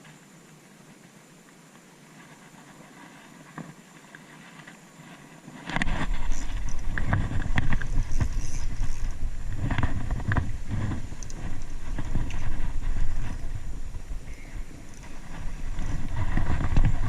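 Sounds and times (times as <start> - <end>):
knocks and rustles: 2.2 - 14.1, 14.9 - 17.0
wind buffeting microphone: 5.7 - 17.0.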